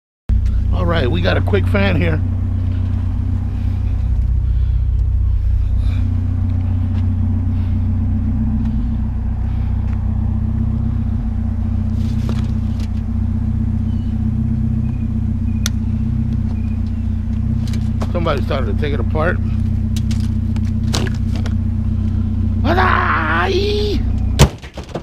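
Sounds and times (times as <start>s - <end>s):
truck engine rumbling: 0.3s - 25.0s.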